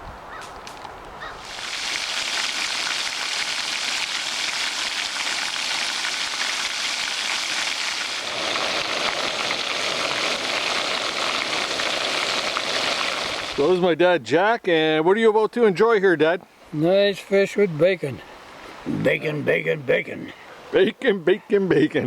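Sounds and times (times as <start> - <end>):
fish and bacon sizzling in a pan: 1.4 - 13.6.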